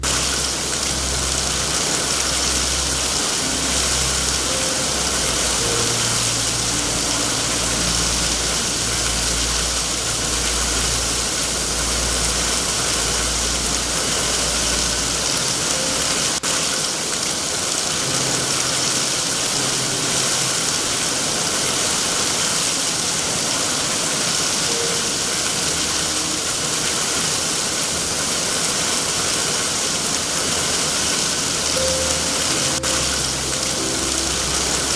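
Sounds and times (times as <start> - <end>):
low throbbing rumble: 0.0 - 16.4
heavy rain hissing: 0.0 - 34.9.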